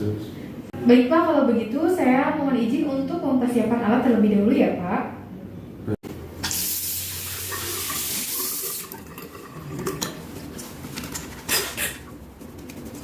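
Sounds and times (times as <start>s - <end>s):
tap water running into sink: 6.4s - 10.2s.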